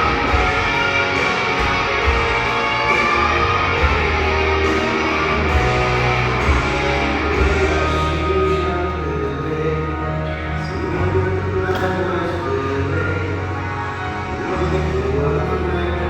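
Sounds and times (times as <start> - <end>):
loud rock music: 0.0 - 16.0.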